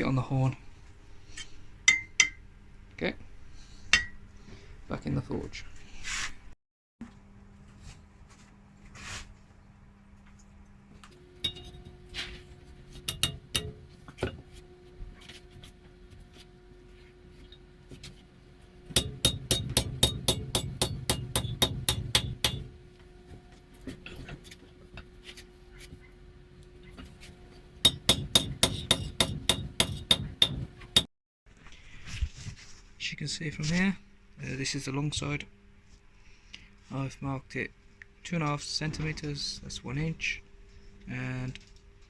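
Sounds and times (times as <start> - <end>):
hammer striking hot steel on anvil: 1.9 - 2.4, 3.9 - 4.2, 11.4 - 12.0, 13.0 - 14.0, 19.0 - 22.7, 27.8 - 31.1.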